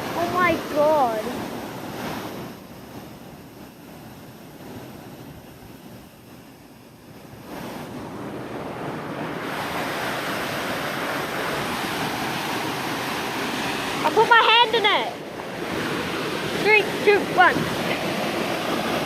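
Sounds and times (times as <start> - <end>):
waterfall rushing: 0.0 - 2.9, 7.5 - 19.0
wind on microphone: 0.0 - 19.0.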